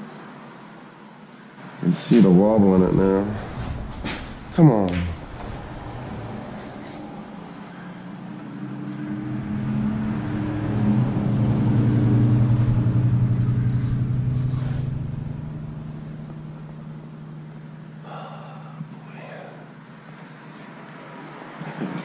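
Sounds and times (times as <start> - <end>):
vehicle driving past: 1.8 - 18.7.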